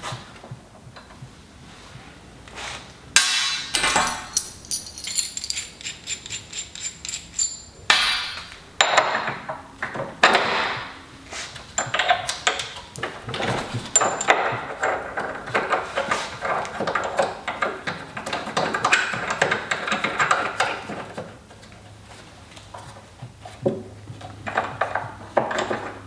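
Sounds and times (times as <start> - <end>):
metal bolts and nuts clinking: 3.2 - 9.2.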